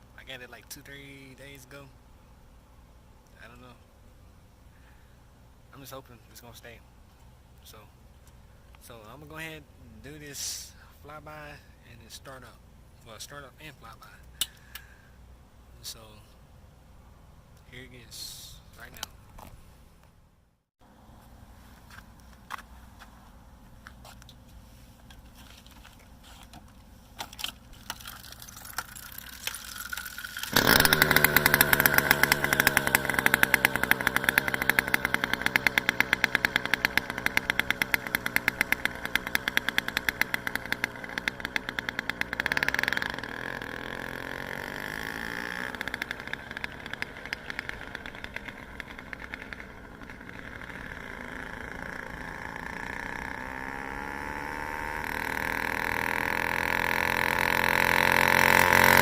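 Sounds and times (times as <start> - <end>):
small engine running: 28.0 - 59.0.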